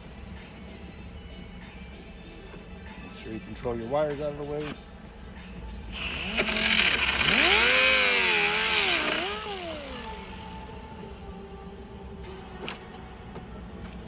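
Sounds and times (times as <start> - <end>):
power tool cutting plastic: 5.9 - 11.0.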